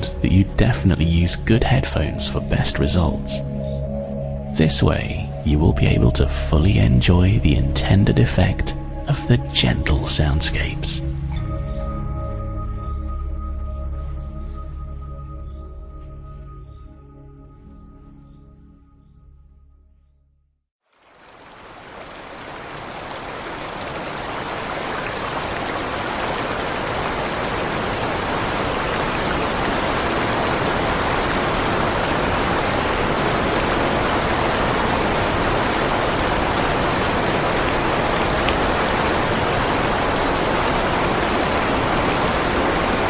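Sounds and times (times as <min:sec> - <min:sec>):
white noise hiss: 0:21.0 - 0:43.0.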